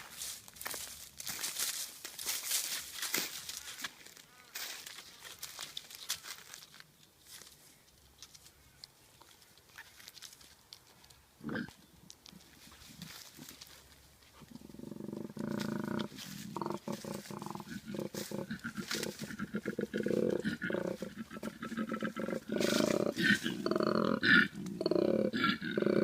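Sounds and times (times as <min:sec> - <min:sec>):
koala bellowing: 0:14.5 - 0:26.0.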